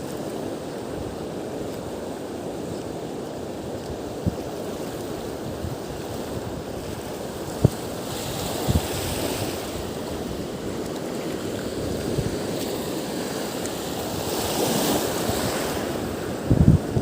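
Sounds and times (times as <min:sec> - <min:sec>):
waves washing: 0:00.0 - 0:17.0
wind buffeting microphone: 0:03.8 - 0:17.0.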